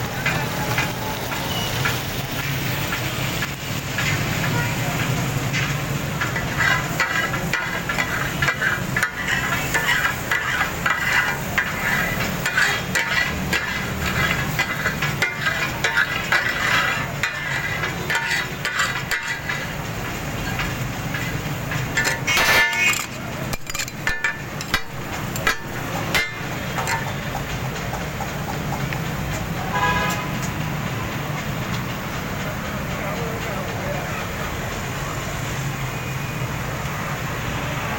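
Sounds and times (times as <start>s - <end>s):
street traffic rumble: 0.0s - 37.9s
food sizzling: 0.1s - 28.7s
metal spatulas clanging on griddle: 3.9s - 27.3s.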